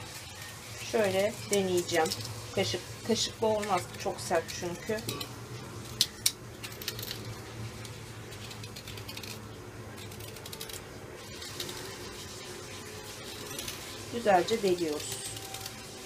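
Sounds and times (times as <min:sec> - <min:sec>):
utensil scraping radish: 0:00.0 - 0:16.0
utensil clicking on radish: 0:03.5 - 0:12.0.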